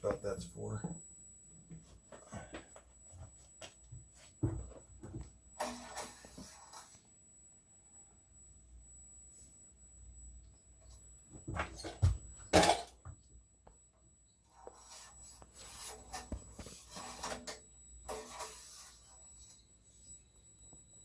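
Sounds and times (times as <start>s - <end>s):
dipstick rubbing and scraping: 14.5s - 17.5s, 18.1s - 19.5s.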